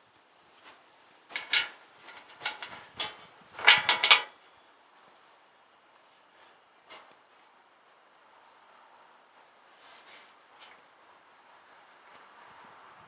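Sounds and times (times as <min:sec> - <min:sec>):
hand tools clinking and scraping: 0:01.3 - 0:04.3.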